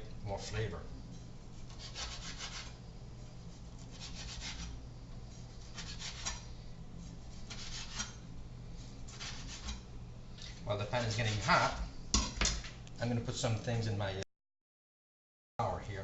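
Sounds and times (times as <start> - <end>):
knife sawing through sausage: 1.6 - 2.8, 3.6 - 4.8, 5.4 - 8.2, 9.1 - 9.9, 10.9 - 11.8.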